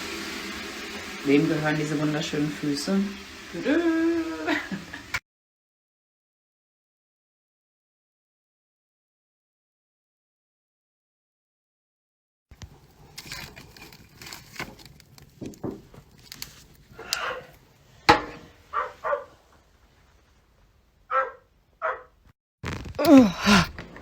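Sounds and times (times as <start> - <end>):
dog barking: 17.1 - 17.5, 18.7 - 19.4, 21.1 - 22.2.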